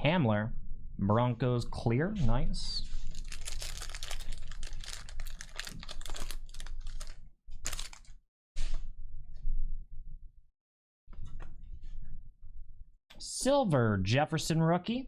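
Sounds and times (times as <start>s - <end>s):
card rustles: 2.9s - 8.1s.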